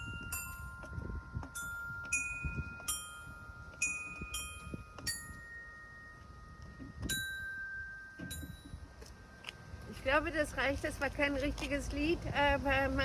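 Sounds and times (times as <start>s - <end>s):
dull thuds of footsteps: 0.0s - 7.5s.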